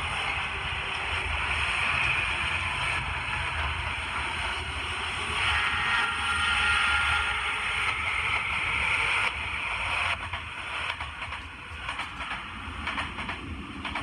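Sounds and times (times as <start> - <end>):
electric train rushing past: 0.0 - 14.0
wheels clicking on track: 7.8 - 14.0.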